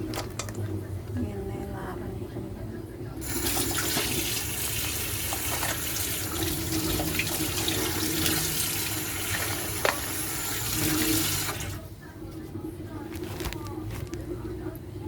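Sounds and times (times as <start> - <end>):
tap water running into sink: 3.2 - 11.8.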